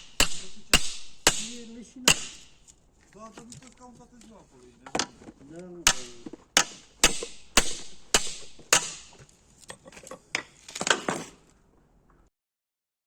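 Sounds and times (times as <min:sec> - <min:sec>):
hammer blows ringing: 0:00.0 - 0:02.6, 0:05.8 - 0:09.2.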